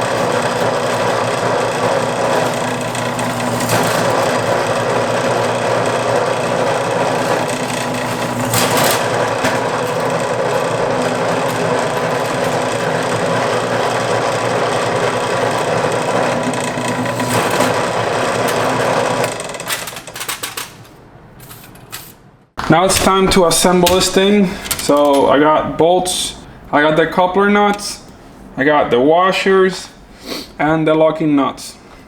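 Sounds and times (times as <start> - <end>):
power tool running: 0.0 - 20.2.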